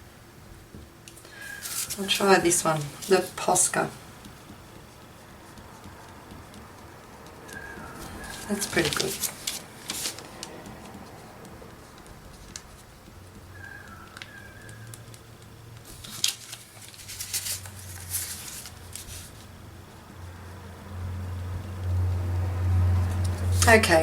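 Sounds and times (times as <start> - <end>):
paint marker clicking and scratching: 4.2 - 16.1.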